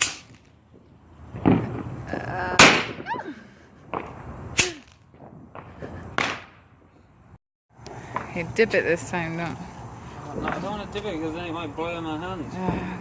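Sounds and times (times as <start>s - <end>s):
firecracker cracks: 0.0s - 0.6s, 2.6s - 3.0s, 3.9s - 5.1s, 6.1s - 6.6s
small firecracker pops: 2.6s - 3.0s, 3.9s - 6.6s.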